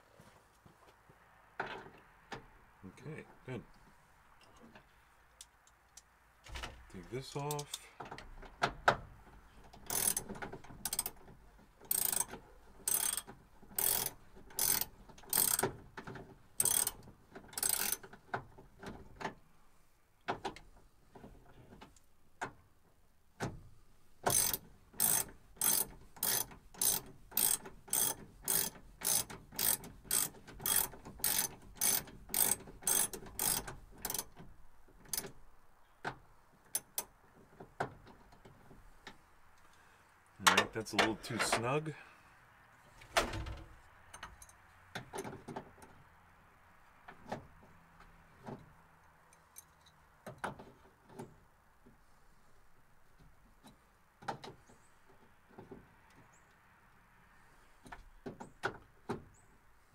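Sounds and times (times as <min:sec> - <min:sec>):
ratchet wrench clicking: 0:09.9 - 0:11.2, 0:11.9 - 0:15.7, 0:16.6 - 0:17.0, 0:17.6 - 0:18.1, 0:24.3 - 0:34.3.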